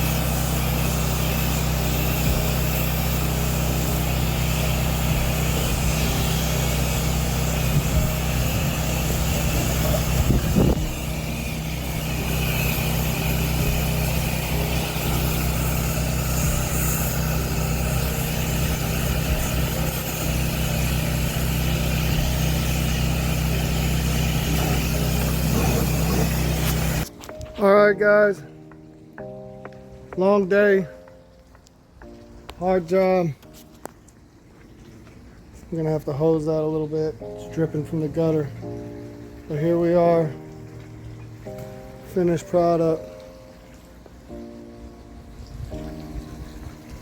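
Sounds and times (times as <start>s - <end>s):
gasoline engine running steadily: 0.0s - 27.1s.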